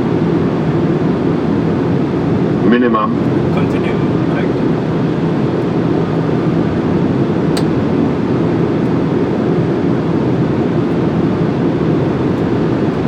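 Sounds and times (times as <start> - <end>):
airflow and engine noise: 0.0 - 13.0.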